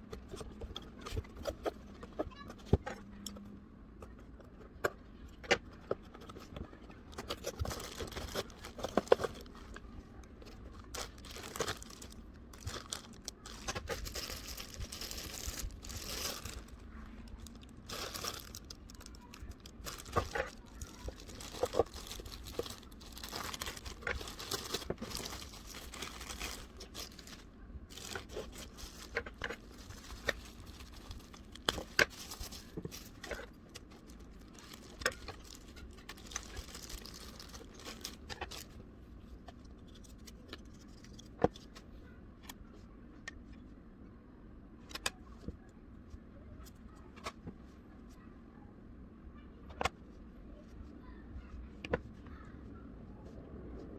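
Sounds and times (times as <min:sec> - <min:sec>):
plastic and cardboard crinkling: 0:00.0 - 0:42.0.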